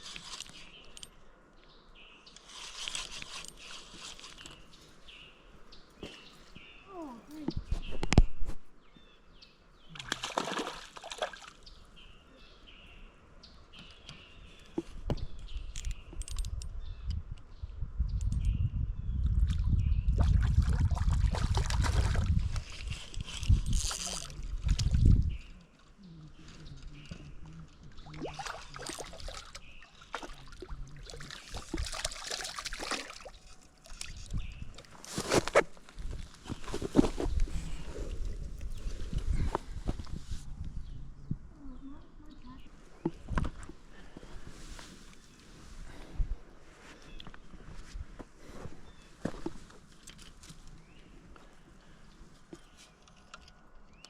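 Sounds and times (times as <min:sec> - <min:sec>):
creek water splashing: 0:09.9 - 0:11.8, 0:20.2 - 0:22.9, 0:27.8 - 0:35.0.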